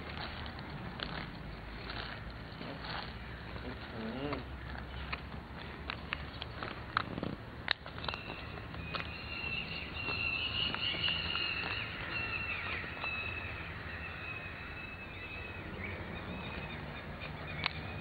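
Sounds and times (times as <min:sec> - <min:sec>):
wavering chirring animal calls: 0:07.0 - 0:18.0.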